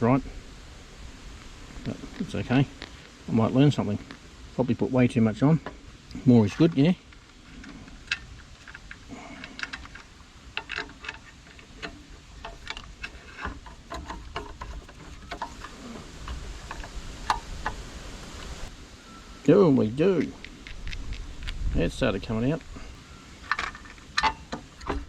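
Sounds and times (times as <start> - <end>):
hand tools clicking and tapping: 7.6 - 17.8, 23.4 - 25.0.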